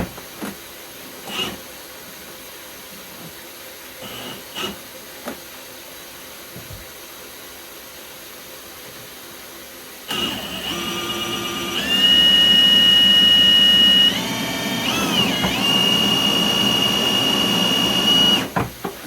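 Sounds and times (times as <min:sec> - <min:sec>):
drill motor whining: 0:10.1 - 0:18.6.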